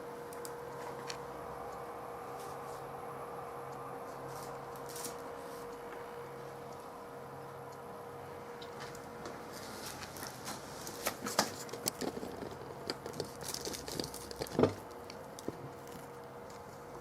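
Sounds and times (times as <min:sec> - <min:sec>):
steady electrical hum: 0:00.0 - 0:17.0
hands handling hard objects: 0:09.8 - 0:16.7.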